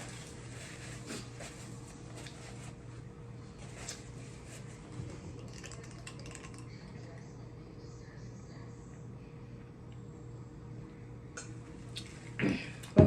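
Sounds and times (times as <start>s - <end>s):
steady low hum: 0.0s - 13.0s
soft clicks and crackles of food: 5.1s - 7.4s
chewing and mouth sounds: 5.2s - 6.7s.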